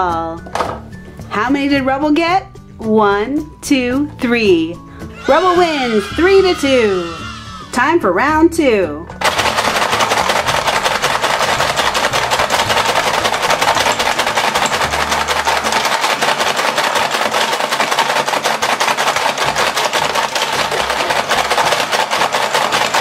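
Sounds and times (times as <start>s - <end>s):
toy mechanism plastic clicking clatter: 9.2s - 23.0s.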